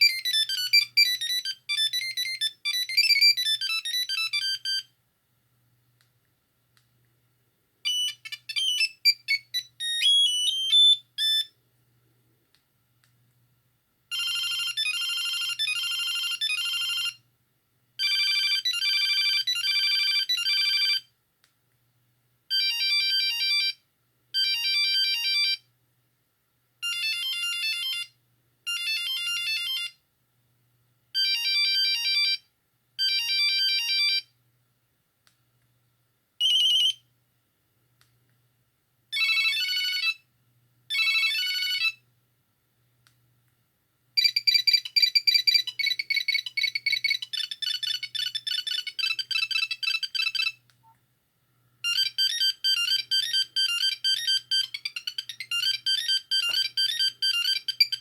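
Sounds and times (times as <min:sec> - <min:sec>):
monophonic phone ringtones: 0:00.0 - 0:04.8, 0:07.9 - 0:11.5, 0:14.1 - 0:17.2, 0:18.0 - 0:21.0, 0:22.5 - 0:23.8, 0:28.7 - 0:30.0, 0:31.2 - 0:32.4, 0:33.0 - 0:34.3, 0:39.2 - 0:40.2, 0:40.9 - 0:42.0, 0:44.2 - 0:50.6, 0:51.8 - 0:58.0.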